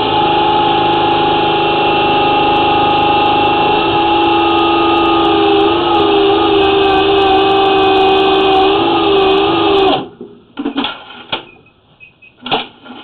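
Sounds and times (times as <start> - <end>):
drain cleaning machine motor running: 0.0 - 10.1.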